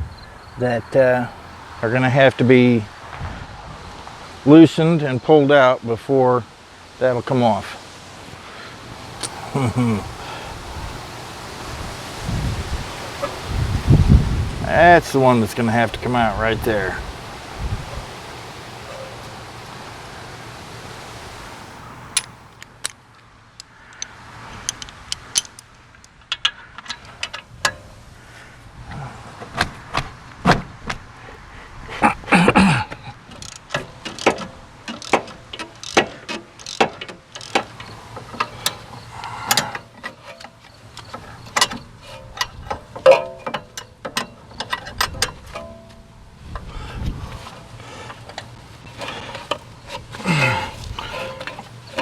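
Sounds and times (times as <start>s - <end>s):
hand tools clicking and clanking: 9.1s - 10.5s, 21.5s - 28.1s, 32.4s - 52.0s.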